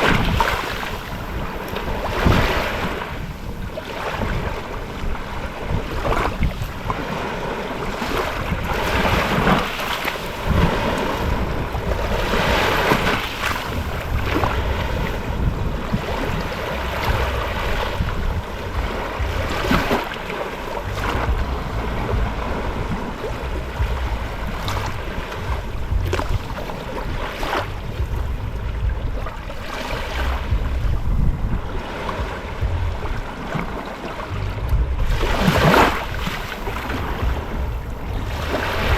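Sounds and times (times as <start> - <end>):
ocean waves breaking on shore: 0.0 - 38.9
wind rumble on microphone: 0.0 - 38.9.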